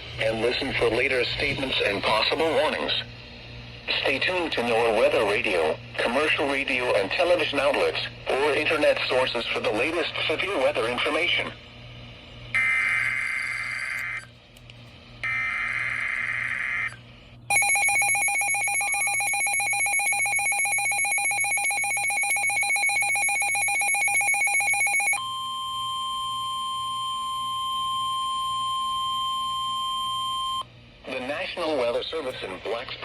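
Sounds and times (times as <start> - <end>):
steady warning alarm tone: 0.1 - 3.0, 12.5 - 14.3, 15.2 - 30.7
screechy data tone bursts: 12.6 - 14.3, 15.2 - 25.2.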